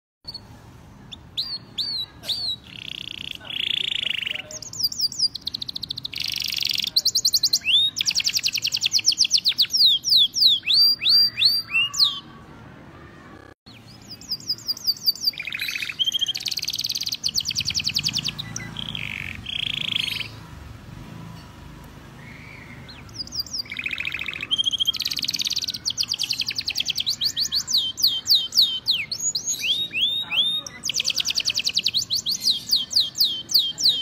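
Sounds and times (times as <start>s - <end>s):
canary singing trills: 0.2s - 12.5s, 13.4s - 34.0s.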